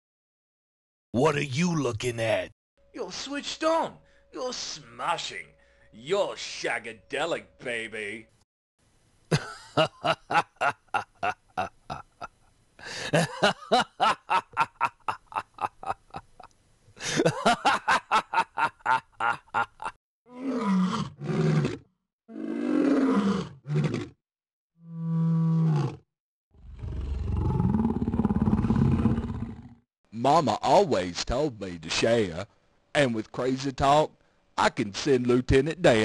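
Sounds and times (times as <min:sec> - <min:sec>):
growls and roar: 0:20.4 - 0:24.2, 0:25.1 - 0:26.0, 0:26.6 - 0:29.8.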